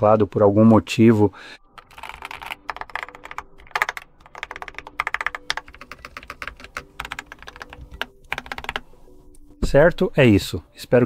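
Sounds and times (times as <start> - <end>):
fast keyboard typing: 1.7 - 9.1.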